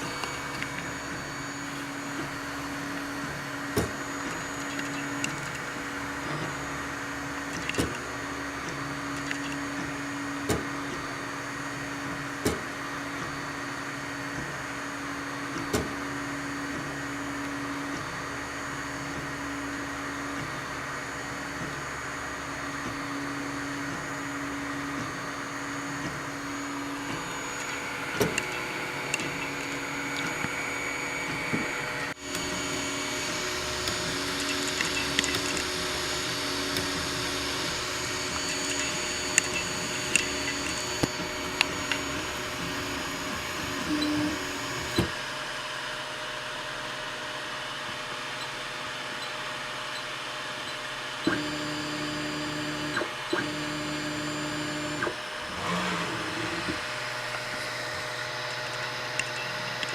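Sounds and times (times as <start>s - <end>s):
stepper motors whirring: 0.0s - 12.6s, 20.3s - 45.2s, 51.3s - 59.9s
extruder sharp clicks: 31.2s - 42.8s.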